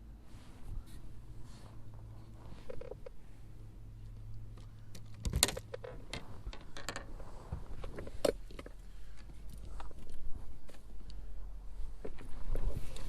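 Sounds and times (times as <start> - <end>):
steady low hum: 0.0 - 13.0
sharp clicks and knocks: 4.5 - 7.2.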